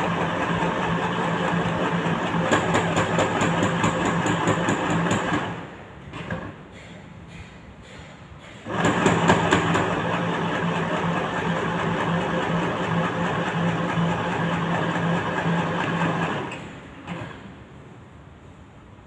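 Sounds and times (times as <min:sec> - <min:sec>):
electric sewing machine stitching: 0:00.0 - 0:05.6, 0:08.7 - 0:16.7.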